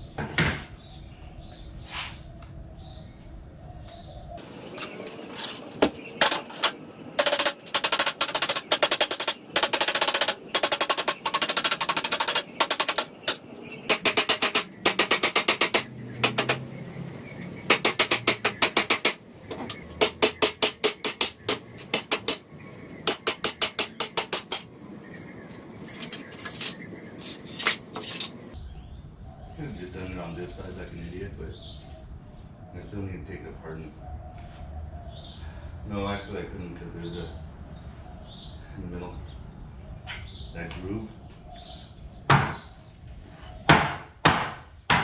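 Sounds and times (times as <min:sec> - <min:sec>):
power tool hammering: 0:04.4 - 0:24.7.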